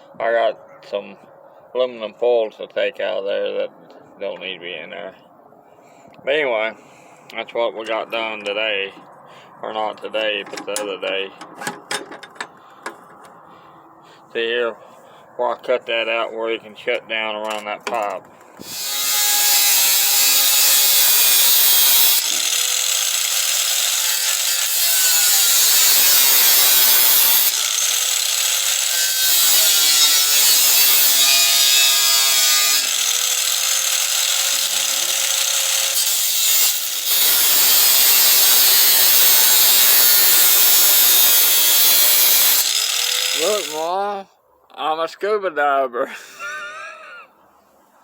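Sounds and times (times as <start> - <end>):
power tool cutting steel: 18.6 - 43.9.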